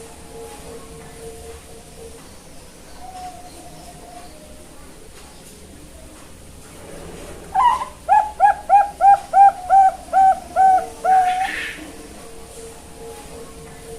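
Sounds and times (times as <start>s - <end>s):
dove cooing: 7.5s - 12.1s.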